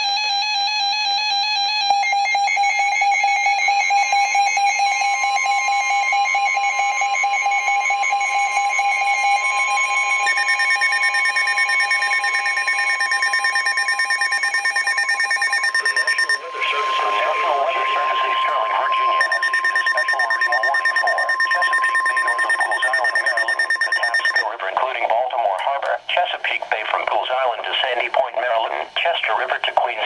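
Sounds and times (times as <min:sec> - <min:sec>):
electronic alert tones: 0:03.8 - 0:24.4.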